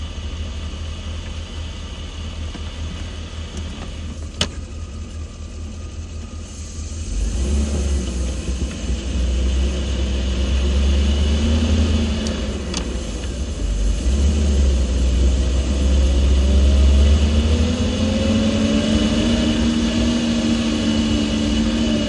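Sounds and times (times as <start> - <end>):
truck engine running: 0.0 - 22.0.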